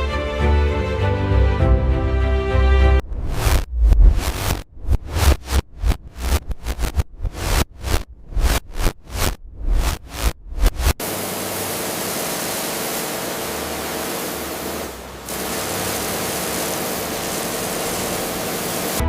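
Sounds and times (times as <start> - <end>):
low pulsing beats: 3.0 - 11.0.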